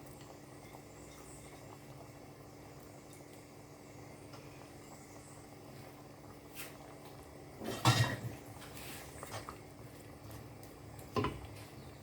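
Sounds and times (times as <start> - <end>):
utensil clattering on pot: 7.6 - 8.4.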